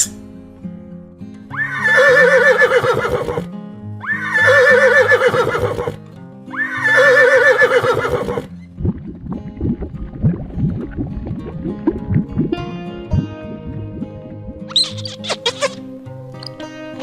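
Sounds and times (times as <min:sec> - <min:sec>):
background music: 0:00.0 - 0:17.0
horse whinnying: 0:01.5 - 0:08.5.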